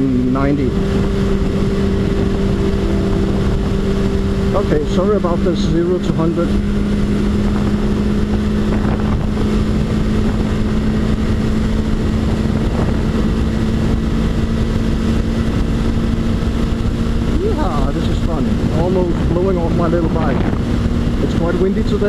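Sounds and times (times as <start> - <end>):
motorcycle engine droning: 0.0 - 22.0
wind rumble on microphone: 0.0 - 22.0.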